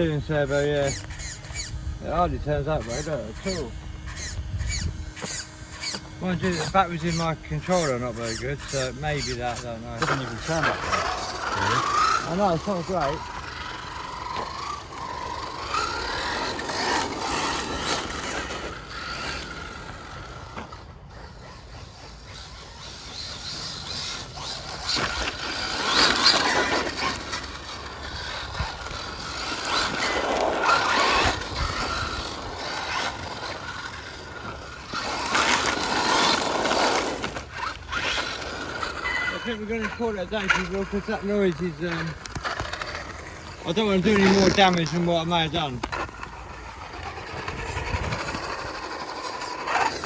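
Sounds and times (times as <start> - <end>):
gear grinding: 0.0 - 50.0
rc car motor whining: 0.0 - 50.0.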